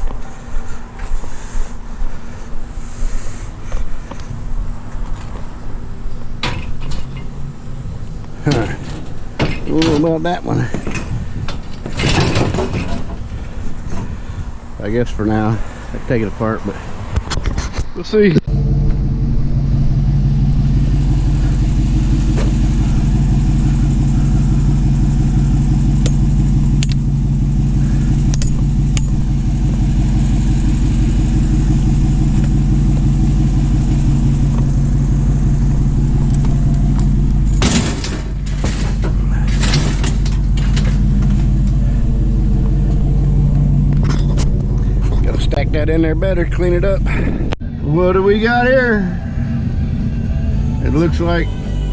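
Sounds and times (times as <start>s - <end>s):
clattering knocks: 10.7s - 13.3s, 36.4s - 41.6s
vehicle engine running: 18.2s - 51.9s.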